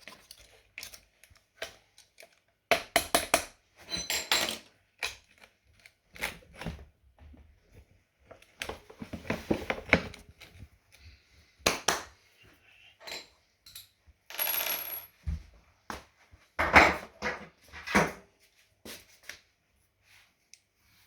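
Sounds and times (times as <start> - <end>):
metal tools clinking: 3.8 - 4.7.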